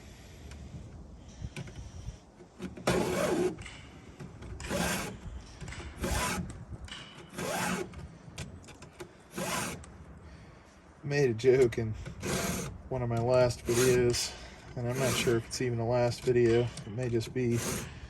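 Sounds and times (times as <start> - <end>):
file strokes on saw chain: 12.2 - 12.7, 13.6 - 15.4, 17.4 - 18.0.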